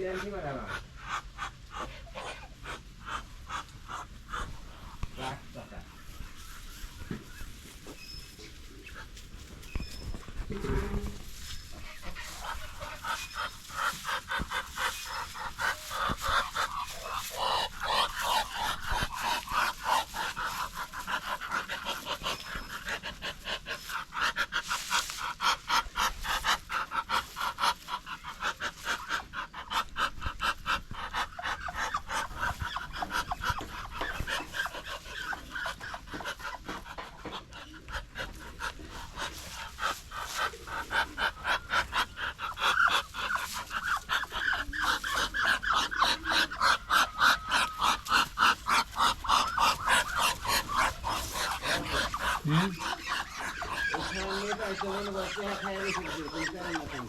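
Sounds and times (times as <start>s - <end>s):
duck hissing puffs: 10.9s - 35.6s.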